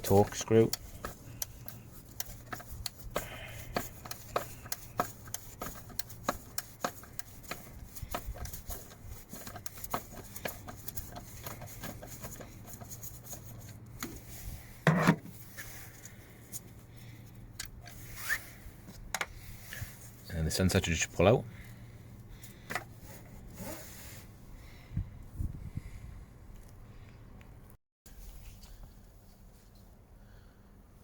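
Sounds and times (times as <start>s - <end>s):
tool clicking and scraping on screw: 0.0s - 14.1s.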